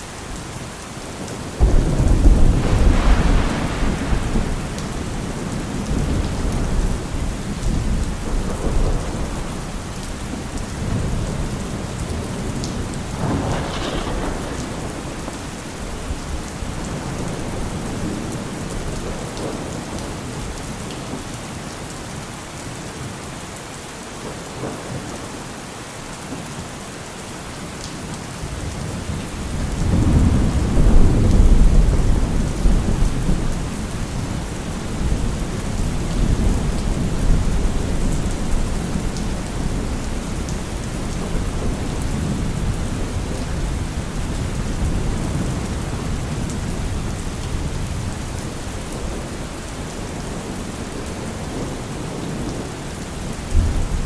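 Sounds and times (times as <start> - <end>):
steady rain: 0.0 - 54.0
thunder rumbling: 1.6 - 19.6, 28.9 - 49.5, 53.5 - 54.0.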